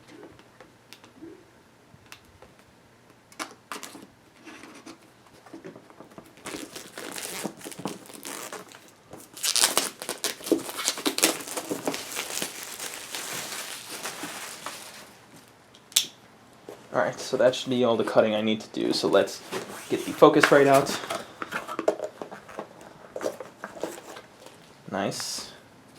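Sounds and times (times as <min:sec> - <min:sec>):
plastic wrap crinkling and tearing: 0:06.3 - 0:15.3, 0:19.2 - 0:21.7.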